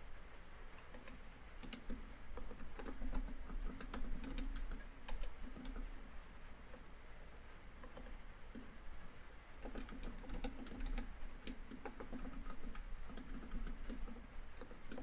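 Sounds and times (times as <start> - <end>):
laptop keyboard typing: 0.8 - 5.9, 7.8 - 8.7, 9.6 - 15.0.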